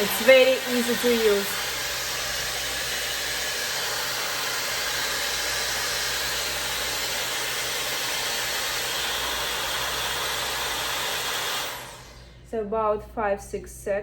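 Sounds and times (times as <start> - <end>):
hot-air styler fan blowing: 0.0 - 12.5.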